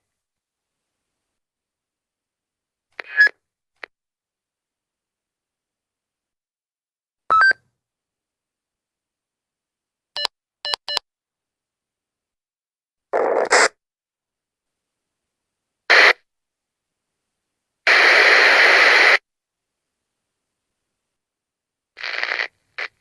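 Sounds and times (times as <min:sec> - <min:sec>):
radio static bursts: 0:15.9 - 0:16.2, 0:17.9 - 0:19.2, 0:22.0 - 0:23.0.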